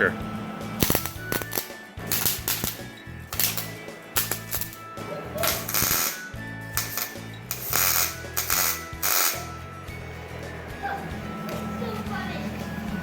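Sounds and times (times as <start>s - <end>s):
background music with low tones: 0.0s - 13.0s
welding arc crackling: 0.6s - 9.8s.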